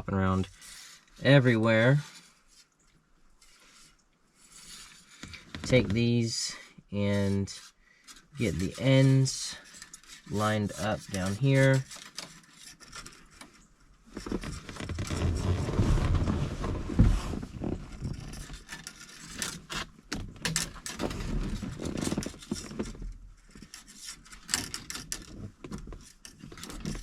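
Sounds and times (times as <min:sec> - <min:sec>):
cables rubbing and scraping: 0:03.4 - 0:27.0.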